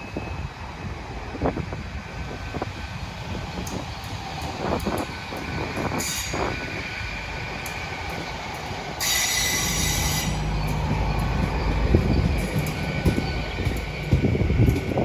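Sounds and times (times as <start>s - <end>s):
metallic train squeal: 0.0s - 1.1s, 3.6s - 15.0s
low train rumble: 0.0s - 15.0s
high ringing from rails: 3.7s - 15.0s.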